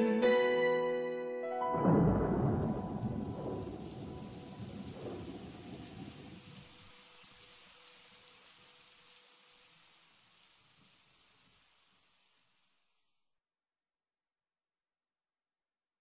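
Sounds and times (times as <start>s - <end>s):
thunder rumble: 1.7s - 7.0s
rain falling: 1.7s - 13.3s.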